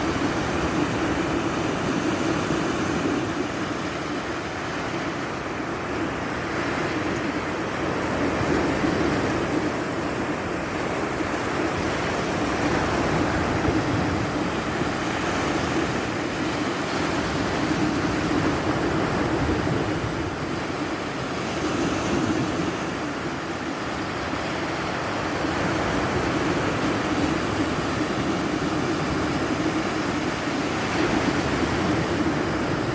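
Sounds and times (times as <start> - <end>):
rushing water: 0.0 - 32.9.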